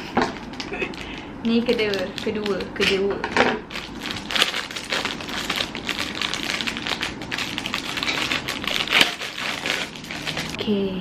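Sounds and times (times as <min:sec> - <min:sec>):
objects handled clicking and crackling: 0:00.2 - 0:10.6.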